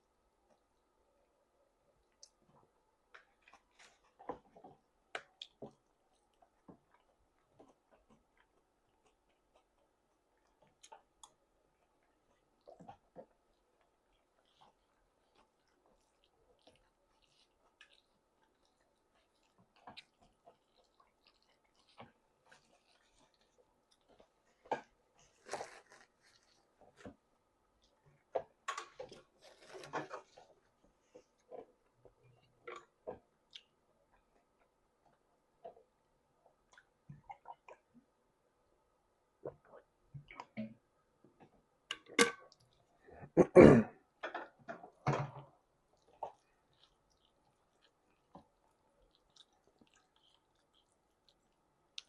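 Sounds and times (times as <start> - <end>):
person chewing food: 3.2 - 38.0, 45.8 - 52.0.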